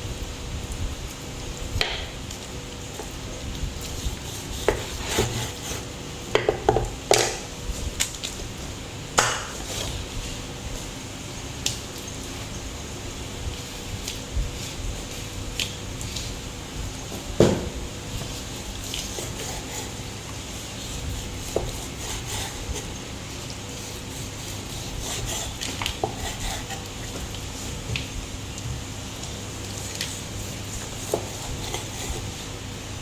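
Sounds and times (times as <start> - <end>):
steady low hum: 0.0 - 33.0
loud knock: 17.4 - 17.8.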